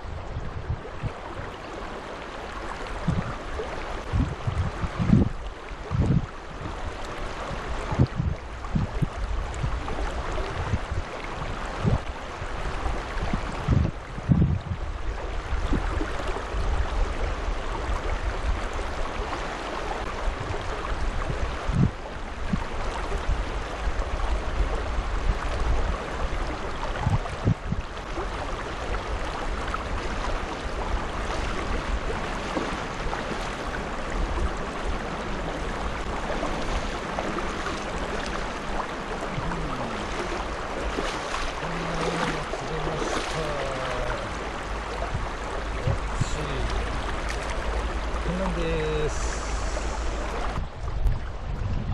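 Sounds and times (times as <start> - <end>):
wind buffeting microphone: 0.0 - 1.9, 2.6 - 51.9
river water rushing: 0.0 - 51.5.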